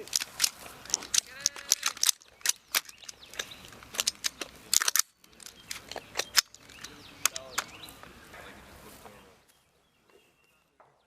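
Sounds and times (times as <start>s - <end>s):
rifles being loaded: 0.0s - 8.2s.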